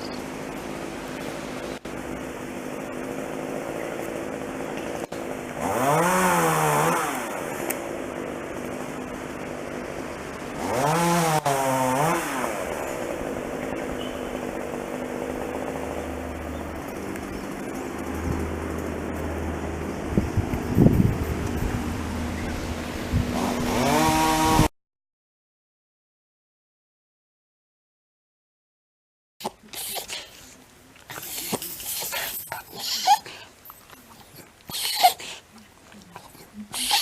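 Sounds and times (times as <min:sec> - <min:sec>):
chainsaw revving and idling: 0:00.3 - 0:24.7.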